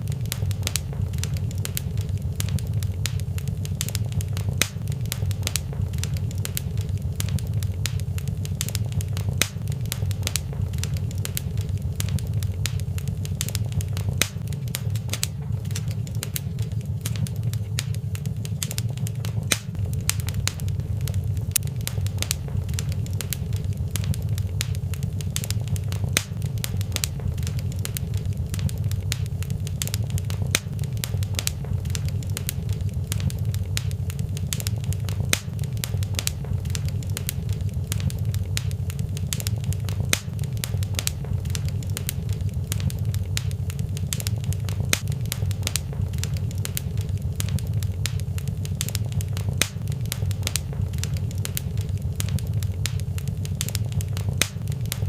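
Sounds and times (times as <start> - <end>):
fire crackling and popping: 0.0 - 55.0
low rumble of flames: 0.0 - 55.0.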